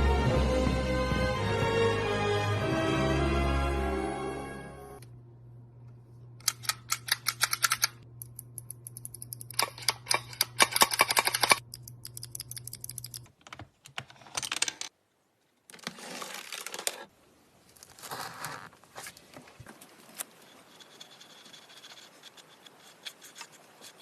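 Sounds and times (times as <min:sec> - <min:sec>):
low steady hum: 0:04.2 - 0:14.6
mechanical keyboard typing: 0:06.5 - 0:13.3.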